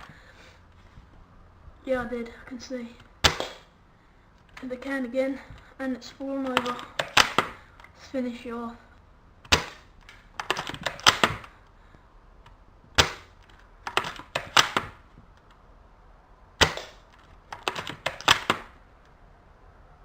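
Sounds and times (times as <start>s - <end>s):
airsoft rifle shot crack: 3.2s - 3.7s, 9.5s - 9.9s, 13.0s - 13.3s, 16.6s - 17.0s.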